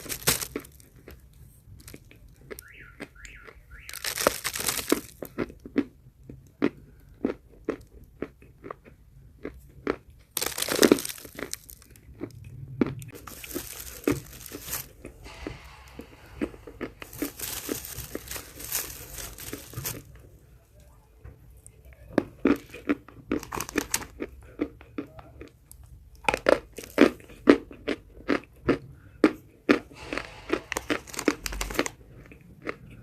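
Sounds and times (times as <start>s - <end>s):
person crunching chalk: 3.4s - 5.6s, 9.8s - 12.4s, 13.1s - 20.1s, 30.0s - 32.0s
chalk crumbling and rustling: 13.2s - 20.2s.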